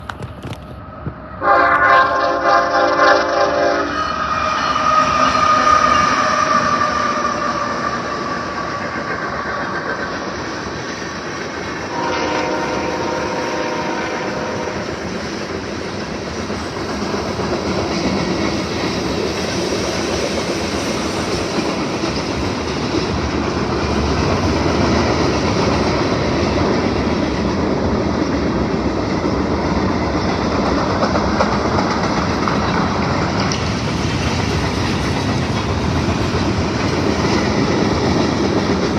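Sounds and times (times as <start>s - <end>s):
train cars rumbling and clacking: 0.0s - 38.9s
train horn: 1.4s - 7.8s, 11.9s - 15.2s.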